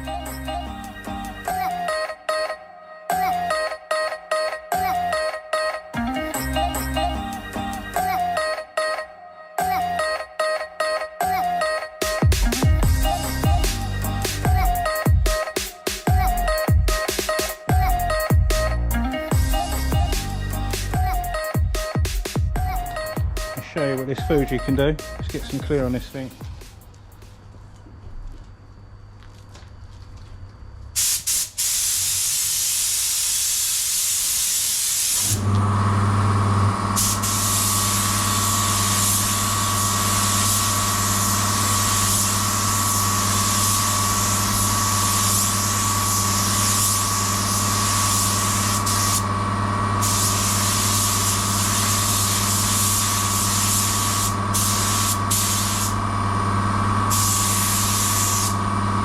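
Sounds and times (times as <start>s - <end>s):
spray gun hissing: 31.0s - 35.4s, 37.0s - 49.3s, 50.0s - 56.0s, 57.1s - 58.6s.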